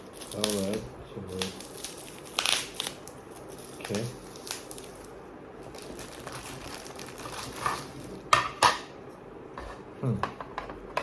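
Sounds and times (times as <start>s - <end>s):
plastic packaging rustling: 0.0s - 8.3s.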